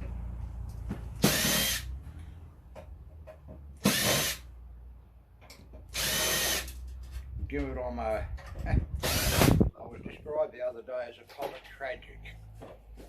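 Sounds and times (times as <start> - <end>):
cordless drill whining: 1.2 - 1.9, 3.8 - 4.5, 5.9 - 6.8, 9.0 - 9.7.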